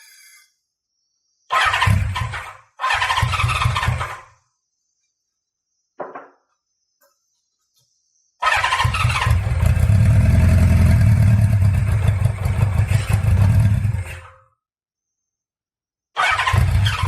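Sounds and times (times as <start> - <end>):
motorcycle engine cranking and running: 1.6 - 4.2, 8.5 - 14.3, 16.2 - 17.0.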